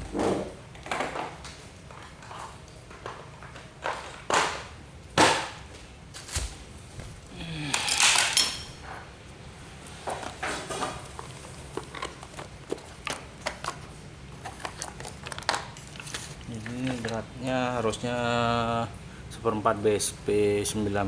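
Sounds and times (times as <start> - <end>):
clattering rattle of metal tools: 7.6 - 8.8, 10.6 - 17.3
metal tools knocking and clinking: 7.7 - 8.8, 13.4 - 17.3.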